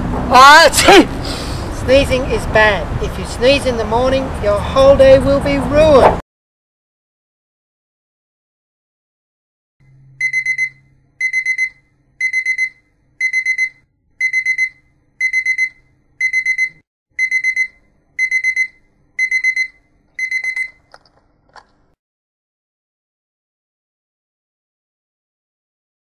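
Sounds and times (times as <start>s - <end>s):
alarm clock beeping: 9.9s - 20.8s.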